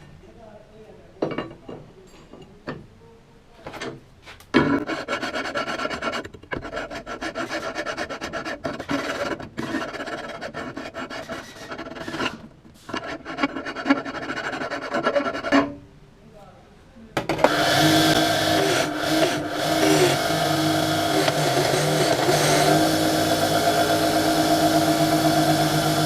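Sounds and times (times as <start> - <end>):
hand tool scraping metal: 4.6 - 15.8, 17.4 - 26.0.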